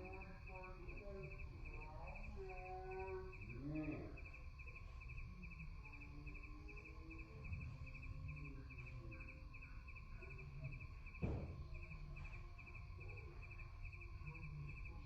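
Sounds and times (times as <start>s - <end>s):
crickets chirping: 0.0s - 15.0s
low rumble and hiss: 0.0s - 15.0s
short knock: 11.2s - 11.6s.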